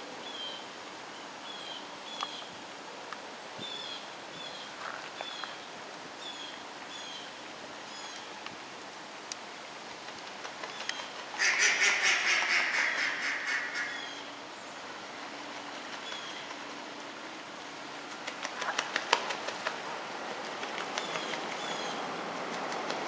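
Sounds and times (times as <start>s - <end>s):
harsh animal calls: 11.4s - 14.3s.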